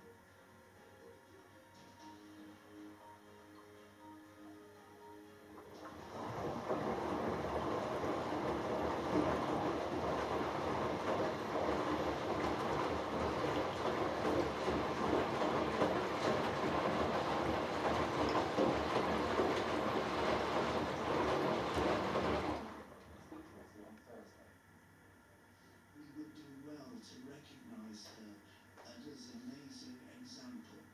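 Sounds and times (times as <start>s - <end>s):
washing machine drum tumbling: 5.7s - 23.7s
clothes and water sloshing: 5.7s - 23.8s.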